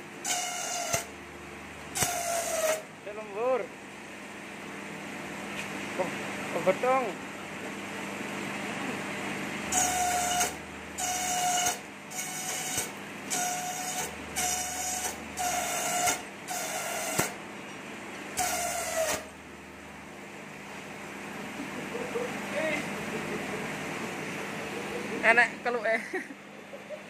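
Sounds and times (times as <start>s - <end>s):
short whining bursts: 0.2s - 1.1s, 9.7s - 17.4s
slicer machine humming: 6.0s - 27.0s.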